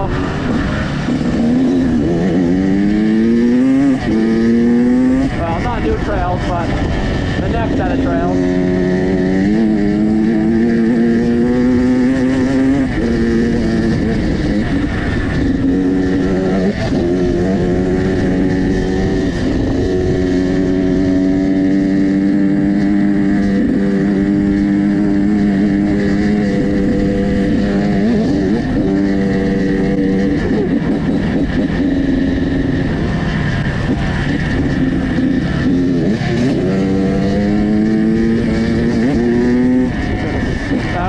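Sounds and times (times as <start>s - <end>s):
dirt bike engine under throttle: 0.0s - 41.0s.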